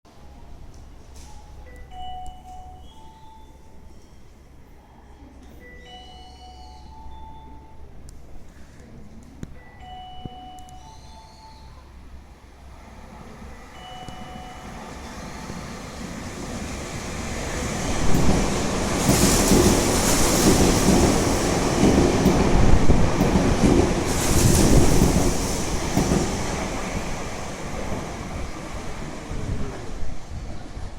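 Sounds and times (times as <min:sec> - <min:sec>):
station chime: 0:05.6 - 0:08.0, 0:13.5 - 0:15.4
electric train passing: 0:09.8 - 0:30.9.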